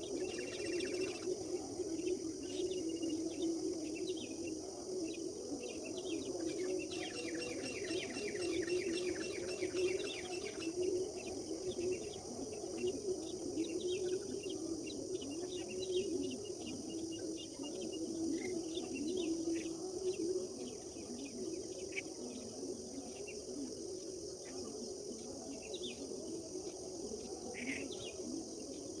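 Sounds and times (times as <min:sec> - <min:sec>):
birds chirping and singing: 0:00.0 - 0:22.1
high insect drone: 0:00.0 - 0:29.0.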